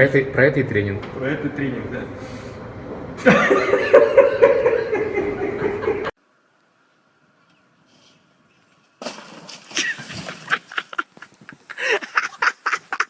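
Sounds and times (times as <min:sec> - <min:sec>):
faint hum: 0:00.0 - 0:08.6
crunching and scuffing: 0:07.9 - 0:11.7.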